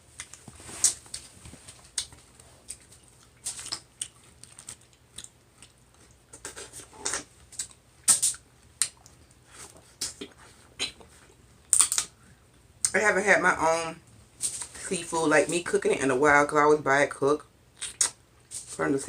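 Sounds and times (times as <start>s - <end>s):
chewing and lip smacks: 0.1s - 11.1s, 17.8s - 18.2s.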